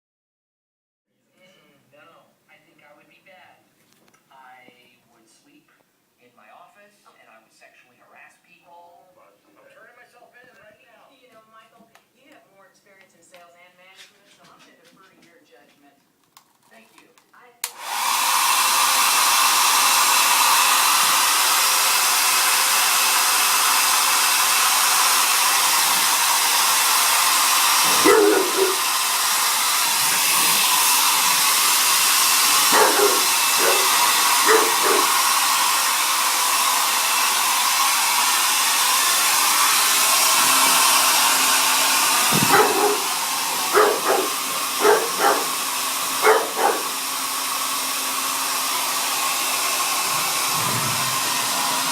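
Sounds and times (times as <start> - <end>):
hair dryer blowing: 17.6 - 51.9
dog barking: 27.8 - 29.0, 32.6 - 35.2, 42.4 - 45.6, 46.2 - 47.0.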